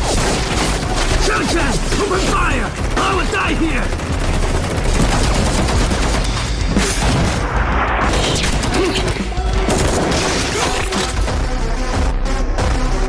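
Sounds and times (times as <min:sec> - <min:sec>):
gunshot sound effects: 0:06.4 - 0:11.3
explosion sound effects: 0:06.7 - 0:08.8
music with heavy bass: 0:10.6 - 0:13.0.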